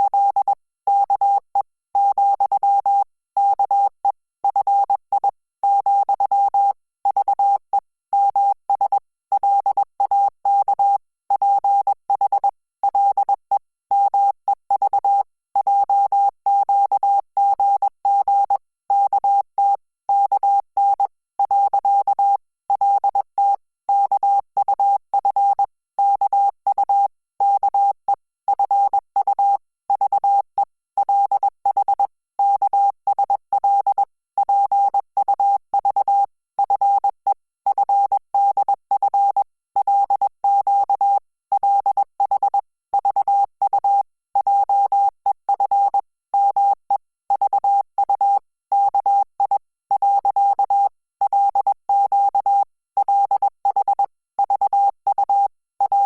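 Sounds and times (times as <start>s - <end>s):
morse code beeps: 45.5s - 56.0s.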